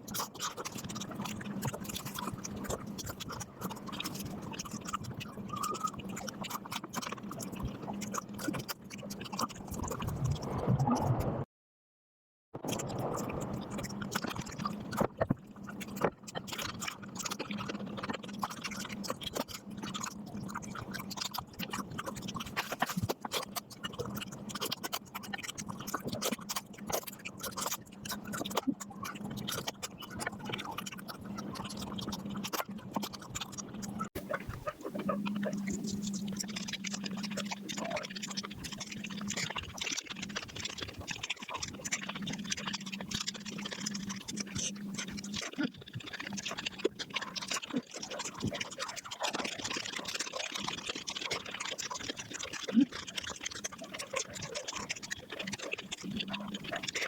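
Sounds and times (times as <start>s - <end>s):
sped-up chewing clicks: 0.0s - 11.0s, 12.6s - 57.0s
steady low hum: 34.2s - 39.5s.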